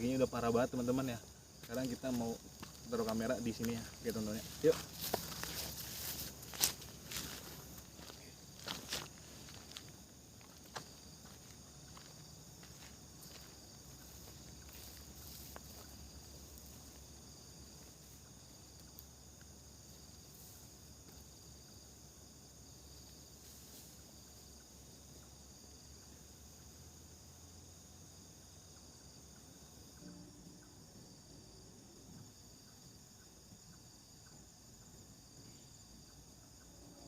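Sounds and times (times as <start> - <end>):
crickets trilling: 0.0 - 37.0.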